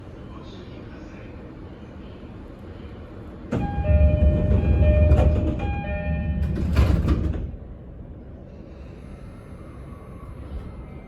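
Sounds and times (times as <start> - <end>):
sliding doors shutting: 3.6 - 7.5.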